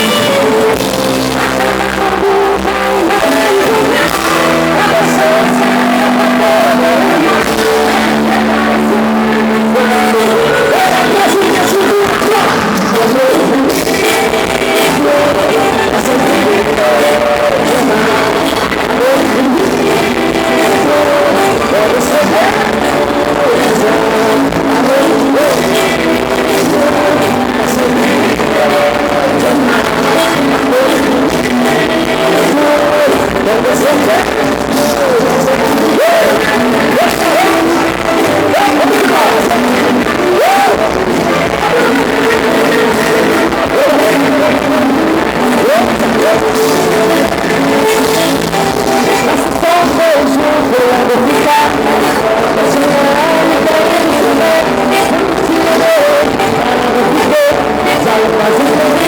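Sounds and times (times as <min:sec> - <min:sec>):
forro band playing: 0:00.0 - 0:59.0
person singing: 0:00.0 - 0:59.0.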